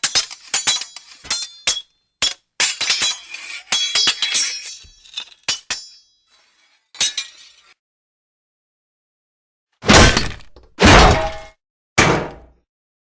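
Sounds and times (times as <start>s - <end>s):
swords clashing: 0.0s - 7.8s.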